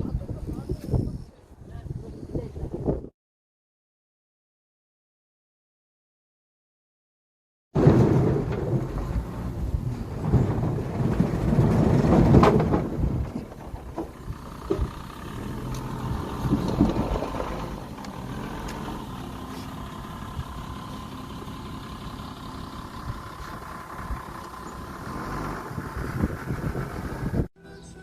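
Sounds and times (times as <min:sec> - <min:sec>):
gusty noise: 0:00.0 - 0:03.1, 0:22.9 - 0:27.5
engine humming: 0:07.8 - 0:28.0.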